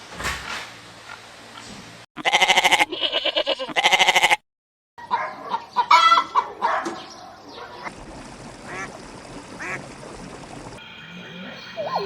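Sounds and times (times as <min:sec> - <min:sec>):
goat bleating: 0:02.2 - 0:04.4
ducks quacking: 0:05.1 - 0:06.8, 0:08.6 - 0:08.9, 0:09.6 - 0:09.8.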